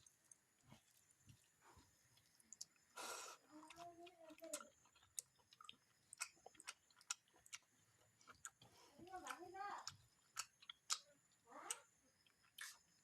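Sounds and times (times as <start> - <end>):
person chewing: 2.1 - 11.1, 11.7 - 13.0
breathy sniff: 3.0 - 3.5.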